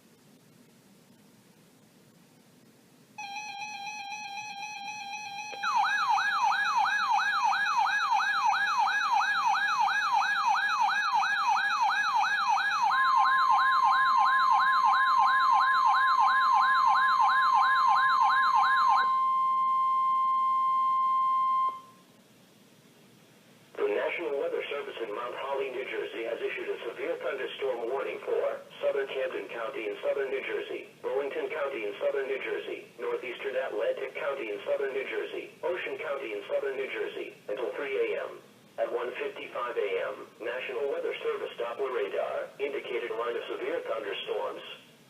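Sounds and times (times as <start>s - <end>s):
warbling siren tone: 3.2s - 22.0s
warning alarm tone: 3.2s - 22.0s.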